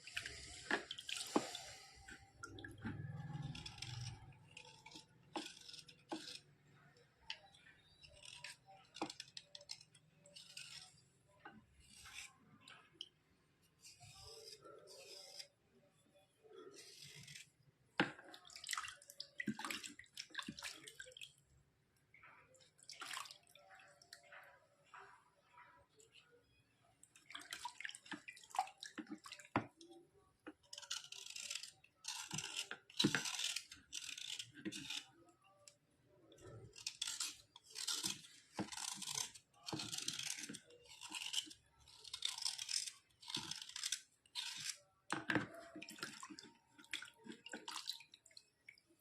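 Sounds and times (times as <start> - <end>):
scraping strokes on a board: 0.1 - 6.8, 7.8 - 12.5, 13.8 - 15.6, 16.5 - 18.1, 30.7 - 35.2, 36.4 - 44.8.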